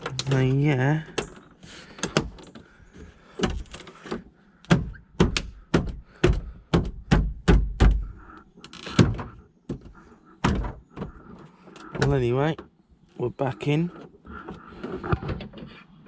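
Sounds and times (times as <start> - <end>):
plastic trim panel thudding: 3.4 - 8.3.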